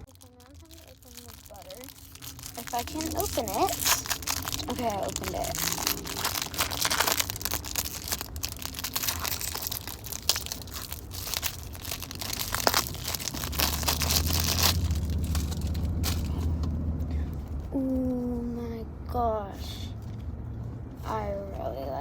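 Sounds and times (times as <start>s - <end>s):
plastic packaging crinkling: 0.0s - 16.7s
low hum: 0.0s - 21.6s.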